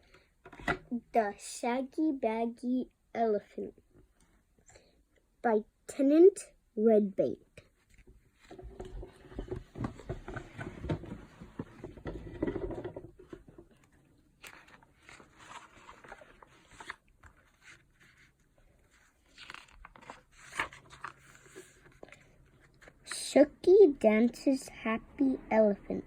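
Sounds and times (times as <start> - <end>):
book pages rustling: 7.7 - 23.2.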